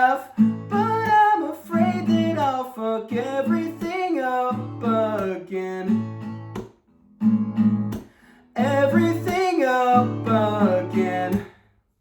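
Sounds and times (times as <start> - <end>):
person singing: 0.0 - 5.9, 8.6 - 11.5
acoustic guitar strummed: 0.0 - 11.6.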